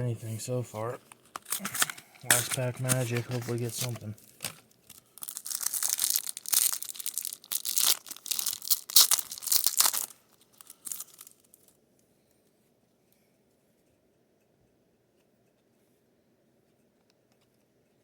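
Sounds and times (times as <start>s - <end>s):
wrapper tearing and crinkling: 1.3s - 11.7s.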